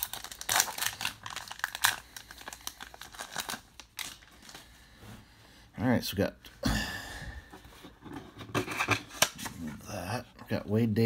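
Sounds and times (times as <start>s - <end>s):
card pack wrapper crinkling: 0.0s - 4.6s.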